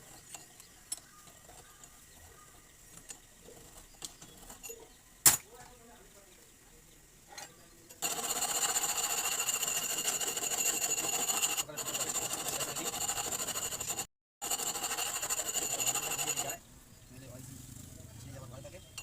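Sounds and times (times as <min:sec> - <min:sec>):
power tool motor running: 0:08.0 - 0:16.6.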